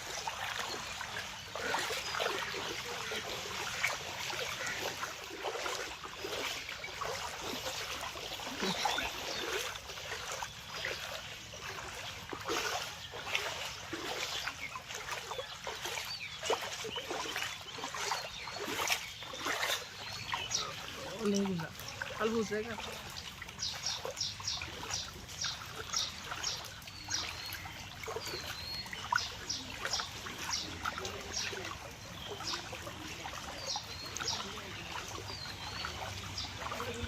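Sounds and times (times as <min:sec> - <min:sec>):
floodwater splashing and trickling: 0:00.0 - 0:37.0.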